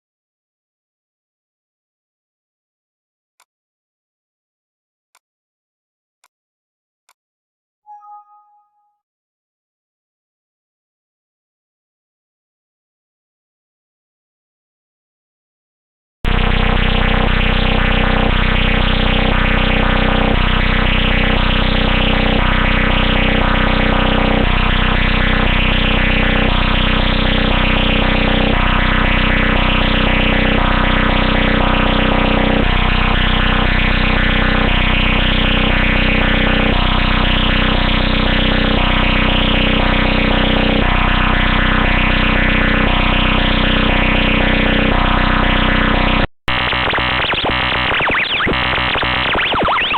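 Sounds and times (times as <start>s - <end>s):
buzzy synthesized electronic music: 16.3s - 49.9s.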